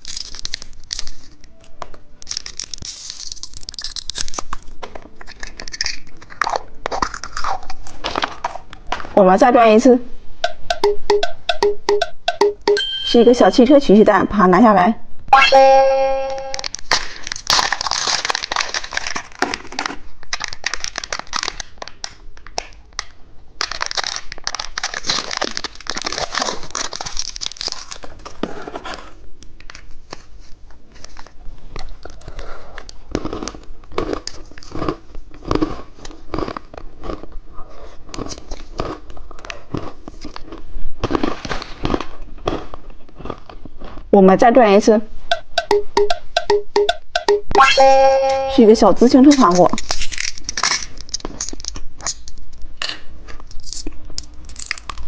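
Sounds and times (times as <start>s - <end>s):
plastic packaging crinkling: 0.0s - 1.5s, 2.2s - 8.6s, 16.6s - 28.6s, 49.3s - 52.5s
small plastic clicks and crackles: 0.0s - 8.9s, 16.6s - 27.9s.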